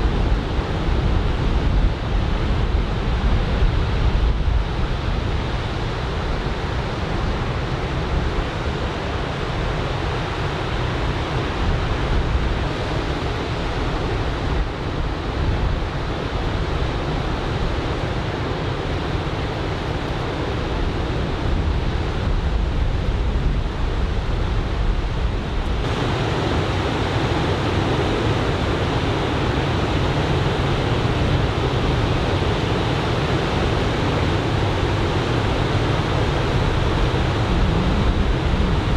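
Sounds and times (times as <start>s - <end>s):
ocean surf breaking: 25.2s - 38.9s.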